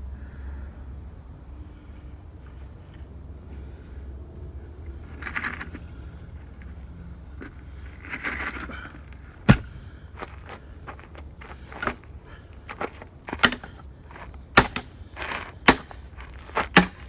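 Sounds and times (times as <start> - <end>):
sharp loud knock: 9.5 - 9.9.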